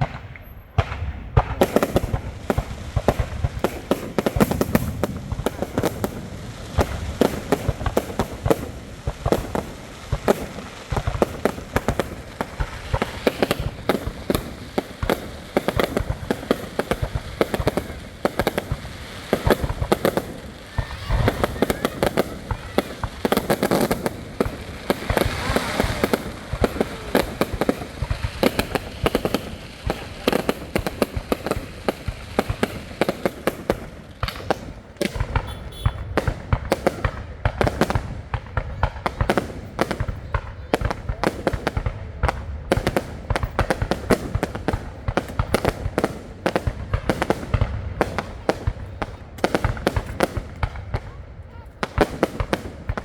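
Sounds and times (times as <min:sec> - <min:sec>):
fireworks bangs and crackles: 0:00.0 - 0:53.0.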